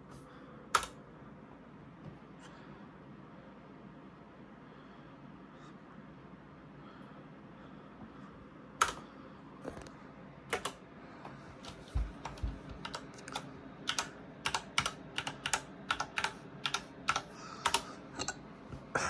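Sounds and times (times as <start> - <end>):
typing on computer keyboard: 0.7 - 1.0, 8.8 - 9.1, 10.5 - 10.8, 11.6 - 17.9.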